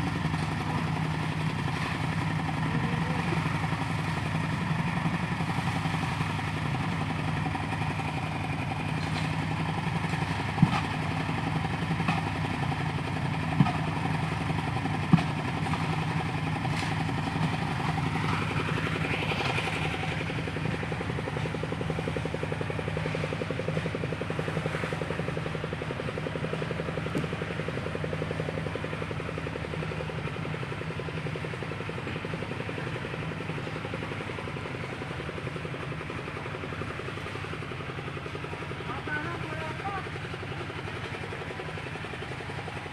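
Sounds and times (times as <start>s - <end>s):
engine running: 0.0s - 42.9s.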